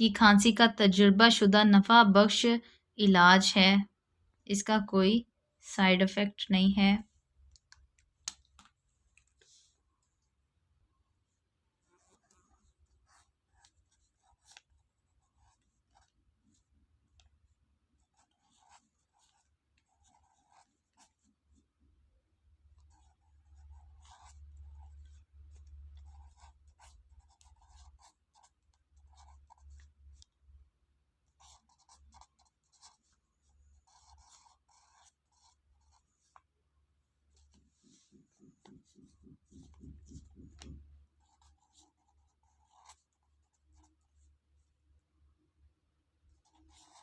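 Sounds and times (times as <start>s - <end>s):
faint scratching and rubbing: 11.2s - 16.7s, 31.4s - 36.5s, 37.3s - 44.4s.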